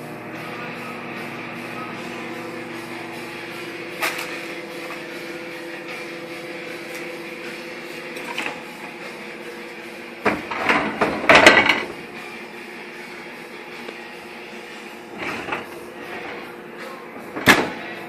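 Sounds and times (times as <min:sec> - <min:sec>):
microwave oven humming: 0:00.0 - 0:18.0
clattering knocks and clunks: 0:10.2 - 0:11.9.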